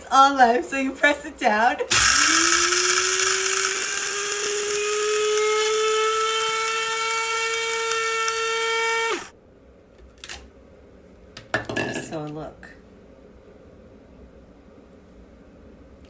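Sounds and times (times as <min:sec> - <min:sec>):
electric coffee grinder grinding beans: 0:01.9 - 0:09.3.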